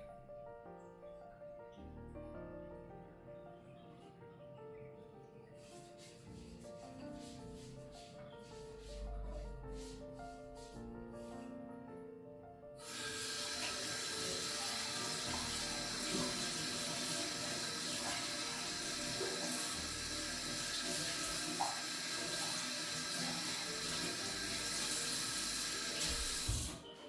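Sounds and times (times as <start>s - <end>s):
water running from tap into sink: 12.8s - 27.0s.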